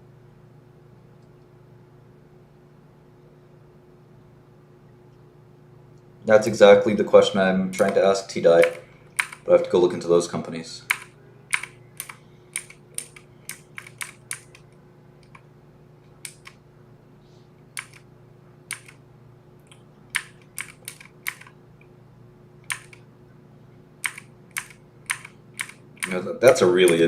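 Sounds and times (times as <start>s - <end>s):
mechanical keyboard typing: 7.8s - 9.8s, 10.9s - 15.4s, 16.2s - 16.6s, 17.8s - 18.0s, 18.7s - 19.0s, 20.1s - 21.5s, 22.7s - 23.0s, 24.0s - 27.0s.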